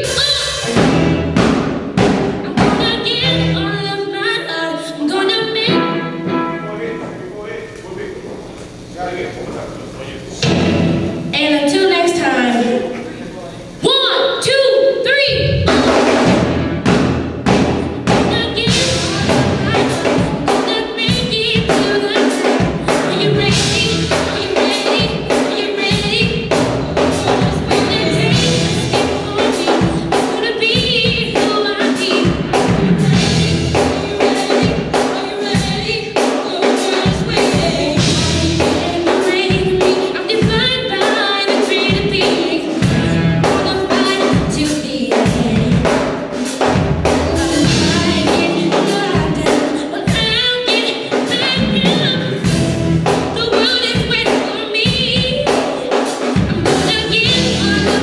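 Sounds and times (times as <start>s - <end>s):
drum kit beat: 0.0s - 4.3s, 5.1s - 9.2s, 9.8s - 58.0s
live band playing: 0.0s - 9.0s, 10.2s - 58.0s
person singing: 18.1s - 58.0s.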